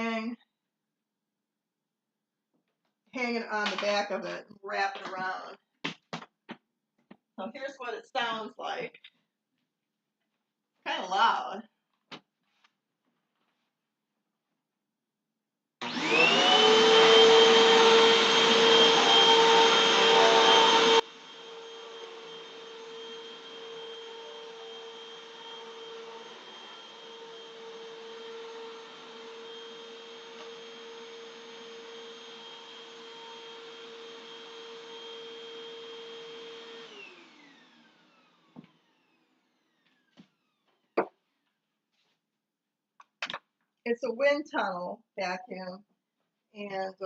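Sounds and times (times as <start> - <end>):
vacuum cleaner motor whining: 15.8 - 40.7.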